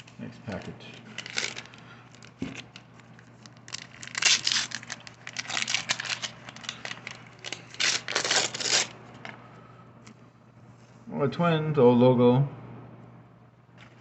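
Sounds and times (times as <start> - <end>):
paper wrapper tearing and crinkling: 1.0 - 9.3.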